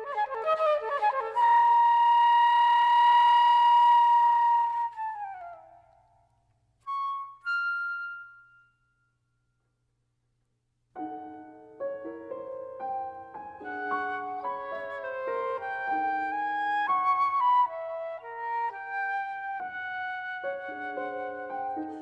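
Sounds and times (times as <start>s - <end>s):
flute notes: 0.0s - 9.2s, 13.6s - 22.0s.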